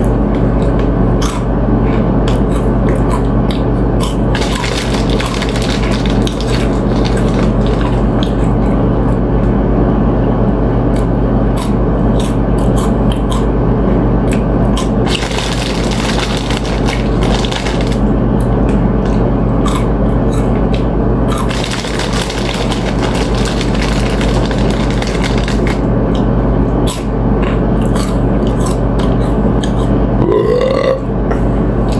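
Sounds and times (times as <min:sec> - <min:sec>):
food being chewed: 0:00.0 - 0:09.6, 0:10.9 - 0:26.3, 0:26.9 - 0:30.0
steady low hum: 0:00.0 - 0:31.9
chips crunching: 0:04.0 - 0:08.8, 0:14.7 - 0:26.3.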